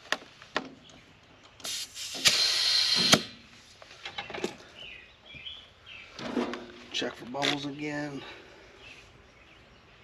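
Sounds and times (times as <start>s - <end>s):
compressed air hissing: 1.6s - 3.5s.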